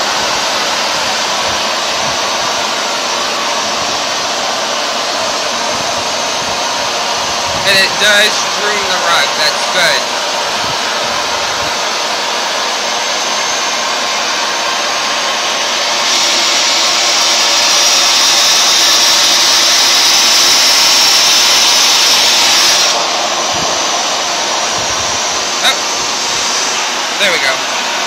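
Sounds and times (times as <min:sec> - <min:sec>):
carpet washer motor whine: 0:00.0 - 0:28.0
hiss: 0:11.6 - 0:27.2.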